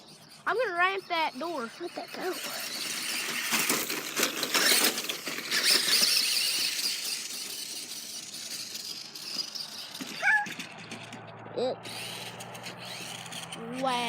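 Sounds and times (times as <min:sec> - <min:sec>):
toy car electric motor whining: 0:00.0 - 0:14.0
rattling clicks and knocks: 0:07.4 - 0:13.5.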